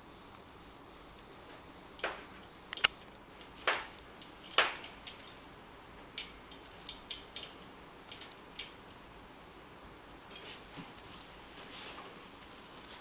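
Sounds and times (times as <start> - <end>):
metal parts clicking and knocking: 2.8 - 8.8.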